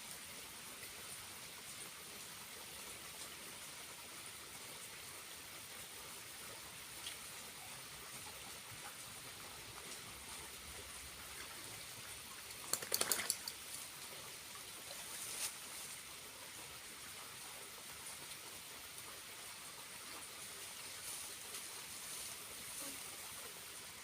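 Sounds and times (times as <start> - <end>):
small waterfall trickling: 0.0 - 24.0
sharp clicks: 12.5 - 13.6.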